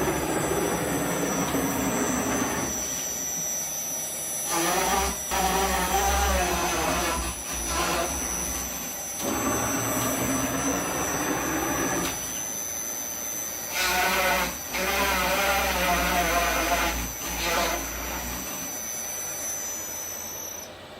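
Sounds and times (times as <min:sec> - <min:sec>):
low motor tones: 0:00.0 - 0:12.6
cnc router spindle whine: 0:00.0 - 0:20.9.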